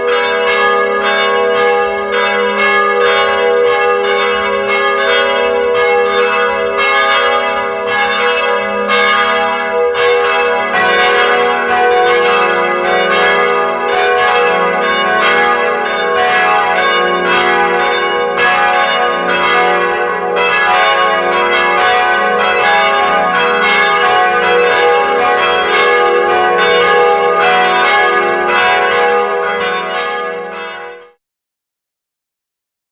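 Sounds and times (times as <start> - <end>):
church bells pealing: 0.0 - 31.2.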